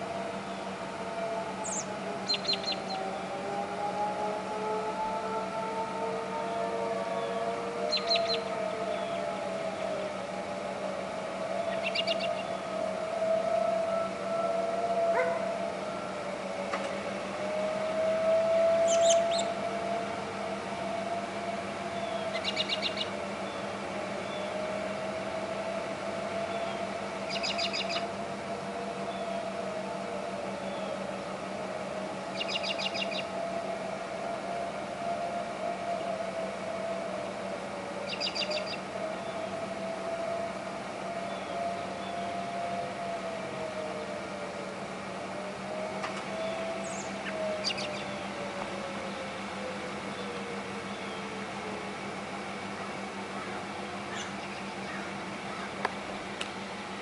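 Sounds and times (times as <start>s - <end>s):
warning siren wavering tone: 0.0s - 57.0s
bird trilling: 1.6s - 3.0s, 7.2s - 9.3s, 11.6s - 12.6s, 18.8s - 19.5s, 22.0s - 23.6s, 26.4s - 28.1s, 32.3s - 33.3s, 38.0s - 39.5s, 46.4s - 48.3s, 53.3s - 55.8s.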